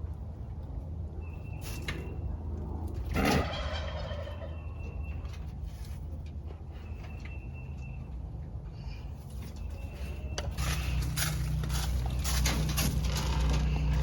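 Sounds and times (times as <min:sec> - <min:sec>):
turkey gobbling: 0:03.1 - 0:04.9.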